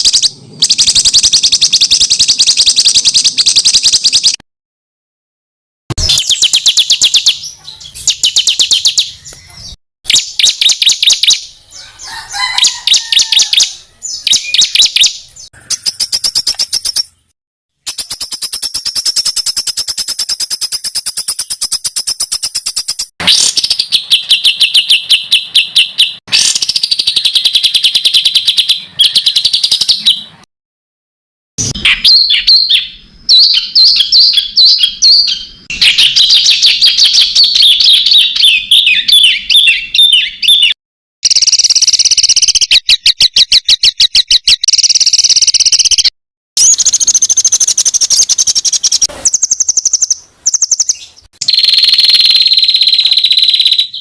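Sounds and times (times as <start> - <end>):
songbird trills and chatters: 6.0 - 17.3, 31.6 - 54.0.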